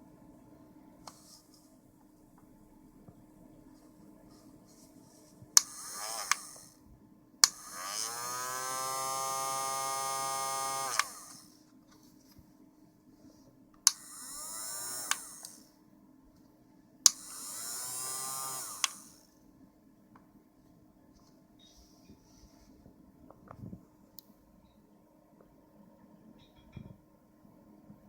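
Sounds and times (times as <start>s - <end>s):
hair dryer switch click: 5.6s - 6.6s, 7.4s - 8.1s, 10.7s - 11.4s, 13.9s - 14.1s, 15.0s - 15.6s, 17.1s - 17.5s, 18.3s - 19.1s
hair dryer whining: 5.6s - 6.7s, 7.4s - 11.5s, 13.9s - 15.6s, 17.1s - 19.2s.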